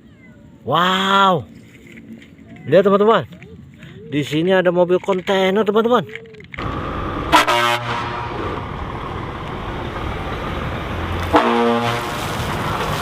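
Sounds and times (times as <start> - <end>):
truck engine running: 6.5 - 13.0
air horn blasts: 7.3 - 8.4, 11.2 - 12.4.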